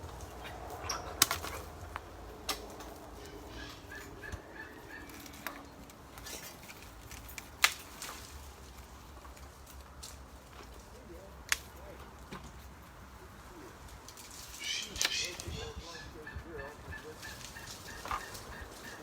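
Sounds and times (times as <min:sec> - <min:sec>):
sharp knocks and cracks: 0:01.1 - 0:03.1, 0:05.1 - 0:10.9
wind rumbling on microphone: 0:15.2 - 0:19.0.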